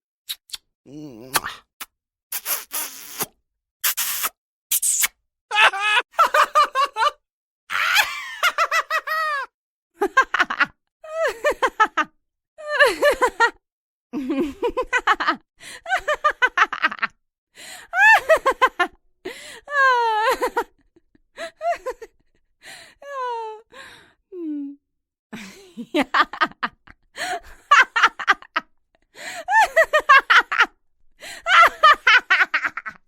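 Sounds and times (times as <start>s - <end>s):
person gasping: 0.9s - 1.7s.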